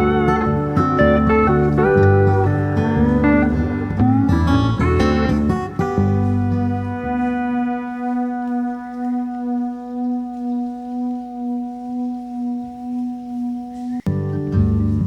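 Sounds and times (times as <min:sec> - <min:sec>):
low bass part: 0:00.0 - 0:10.4.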